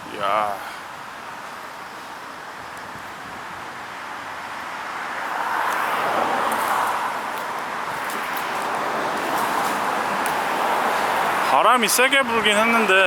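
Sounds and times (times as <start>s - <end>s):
road traffic rushing: 0.0s - 13.0s.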